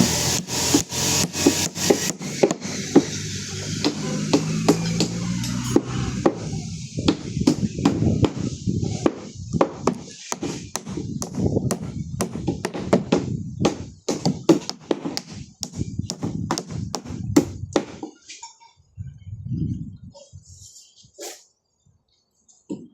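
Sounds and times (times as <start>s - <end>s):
sharp knocks and taps: 0.8s - 6.4s, 9.0s - 18.1s.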